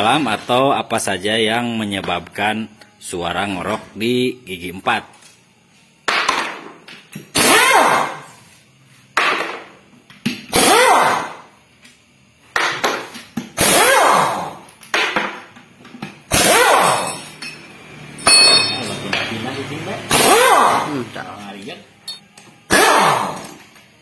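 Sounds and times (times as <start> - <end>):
power wrench bursts: 7.2 - 8.4, 10.5 - 11.5, 13.5 - 14.8, 16.3 - 17.4, 20.0 - 21.0, 22.7 - 23.6.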